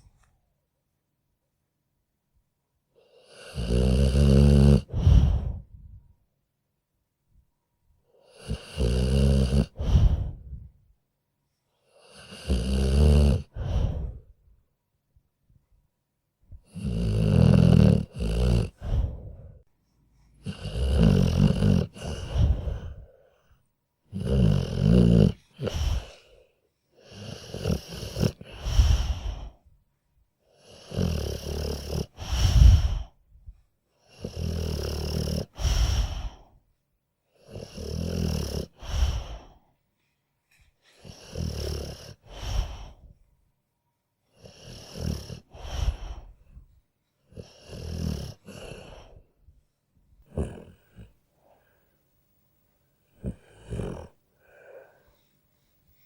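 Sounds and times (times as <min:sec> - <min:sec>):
dog snoring: 0:03.0 - 0:05.8, 0:08.2 - 0:10.7, 0:11.9 - 0:14.3, 0:16.6 - 0:19.5, 0:20.3 - 0:23.2, 0:24.1 - 0:29.6, 0:30.5 - 0:33.2, 0:34.0 - 0:36.6, 0:37.4 - 0:39.6, 0:40.9 - 0:43.2, 0:44.3 - 0:46.6, 0:47.3 - 0:49.3, 0:50.2 - 0:51.8, 0:53.0 - 0:55.2.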